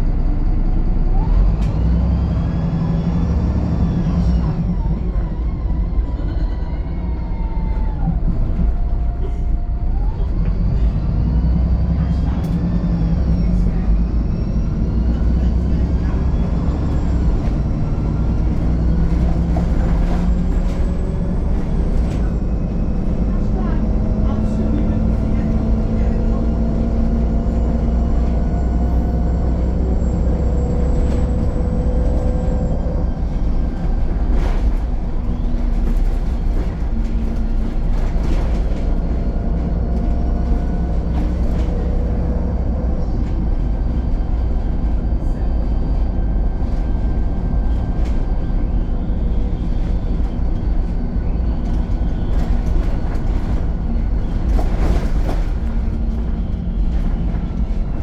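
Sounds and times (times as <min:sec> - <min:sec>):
bus engine and road rumble: 0:00.0 - 0:58.0.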